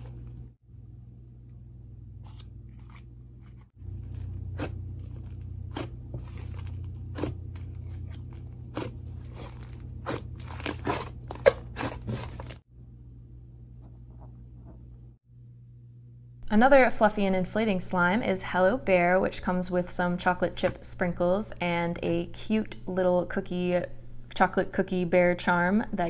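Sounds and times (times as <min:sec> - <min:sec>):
slime squished by hand: 0:02.2 - 0:12.6
slime crackling and popping: 0:03.9 - 0:12.6.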